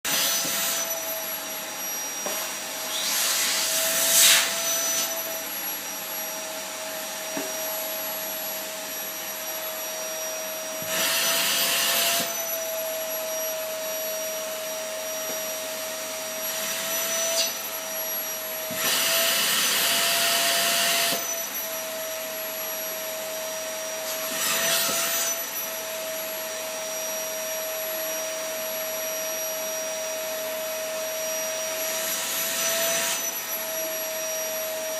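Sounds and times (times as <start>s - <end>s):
vacuum cleaner motor whine: 0.0s - 34.9s
vacuum nozzle rush of air: 2.4s - 5.3s.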